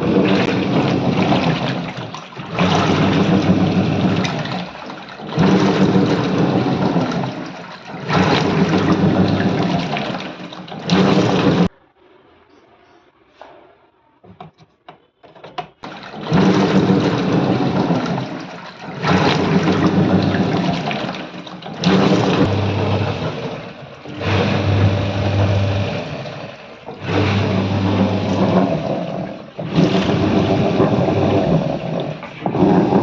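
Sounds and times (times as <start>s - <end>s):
washing machine churning water: 0.0s - 11.8s, 15.4s - 33.0s.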